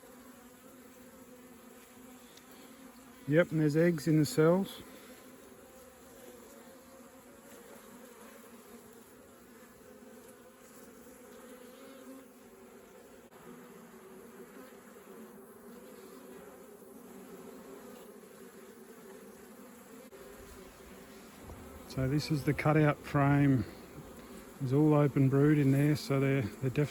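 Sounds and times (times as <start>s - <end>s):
honeybees buzzing: 0.0s - 26.9s.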